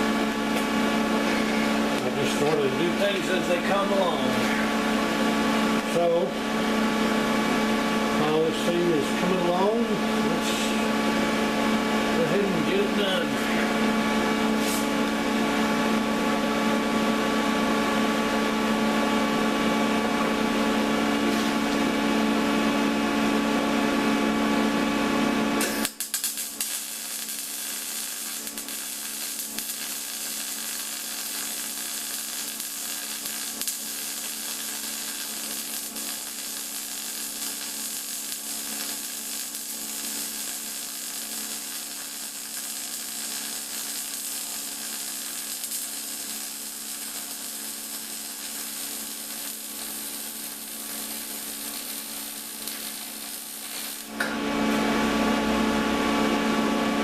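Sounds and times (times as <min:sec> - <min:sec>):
welding arc crackling: 0:00.0 - 0:11.0, 0:12.1 - 0:16.2, 0:25.5 - 0:55.5
machine hum: 0:00.0 - 0:57.0.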